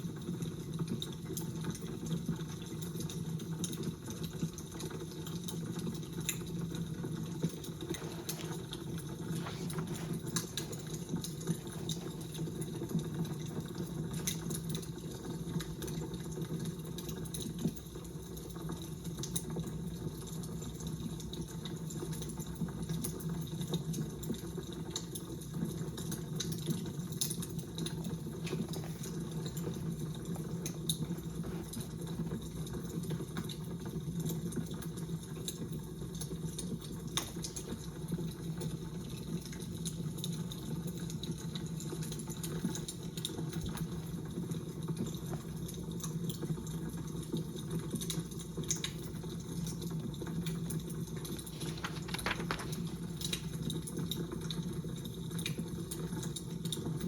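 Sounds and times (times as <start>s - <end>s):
fire crackling: 4.5s - 17.1s.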